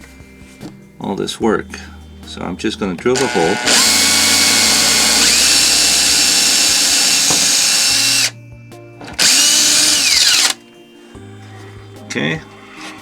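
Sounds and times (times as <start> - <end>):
power drill drilling: 3.0 - 8.3, 9.1 - 10.6.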